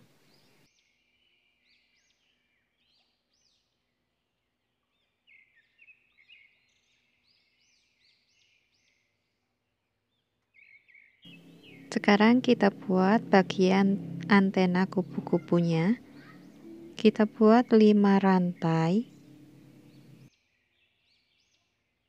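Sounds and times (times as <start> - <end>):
small birds chirping: 10.7 - 20.3.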